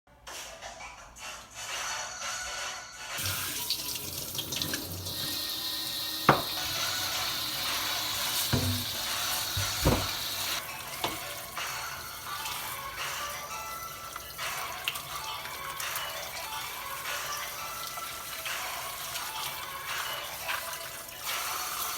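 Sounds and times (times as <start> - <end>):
tap water running into sink: 3.2 - 21.9
sharp knocks: 9.6 - 10.3.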